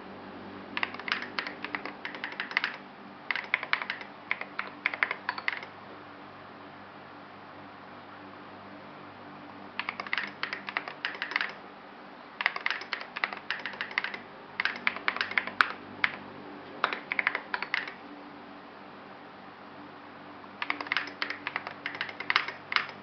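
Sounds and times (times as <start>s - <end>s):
low home background hum: 0.0s - 23.0s
mechanical keyboard keystroke clacks: 0.8s - 5.7s, 9.8s - 11.6s, 12.4s - 16.2s, 16.8s - 18.0s, 20.6s - 23.0s.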